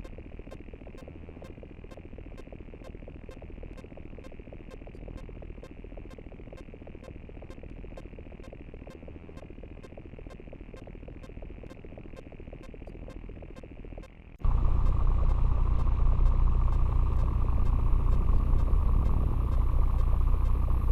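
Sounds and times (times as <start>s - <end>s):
crackling low static: 0.0s - 20.9s
regular electronic tick: 0.0s - 20.9s
dense buzzing rumble: 14.4s - 20.9s.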